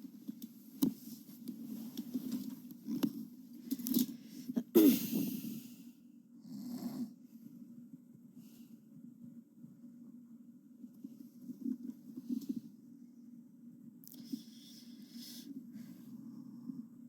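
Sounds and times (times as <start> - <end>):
person wheezing breath: 4.3 - 5.9.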